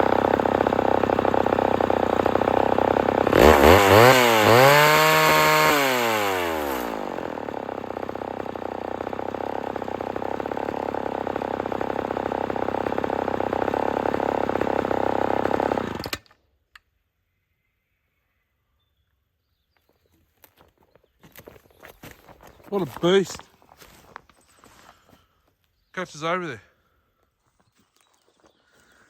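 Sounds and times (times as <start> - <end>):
chainsaw engine revving and idling: 0.0 - 16.3.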